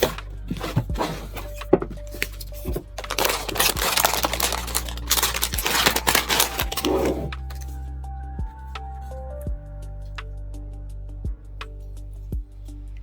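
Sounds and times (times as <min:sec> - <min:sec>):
plastic rustling and crinkling: 0:00.0 - 0:07.8
quiet background music: 0:00.0 - 0:13.0.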